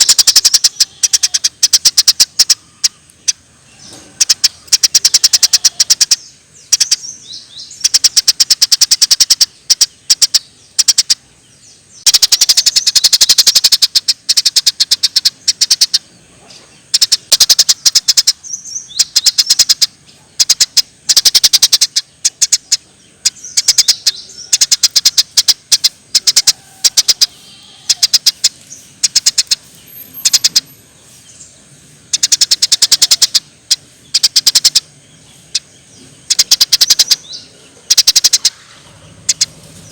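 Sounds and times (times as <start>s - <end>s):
sparrows chirping: 0.0s - 39.9s.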